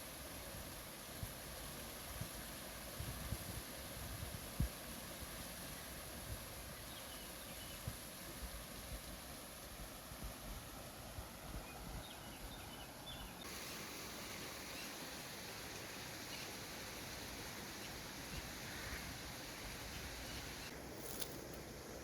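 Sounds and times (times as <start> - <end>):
wind blowing: 13.4 - 22.0.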